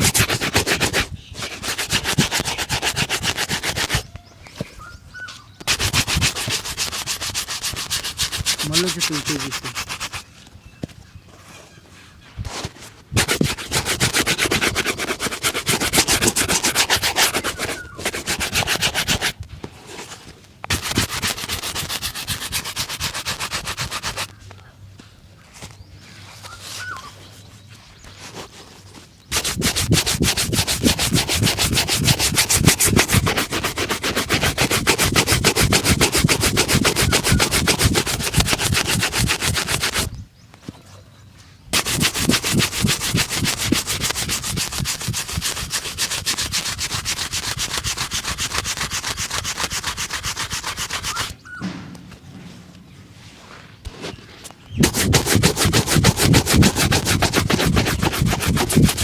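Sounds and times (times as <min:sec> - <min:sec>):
shoe being rubbed: 0:00.0 - 0:04.1, 0:05.6 - 0:10.4, 0:12.4 - 0:24.4, 0:28.1 - 0:40.1, 0:41.7 - 0:51.4, 0:53.3 - 0:59.0.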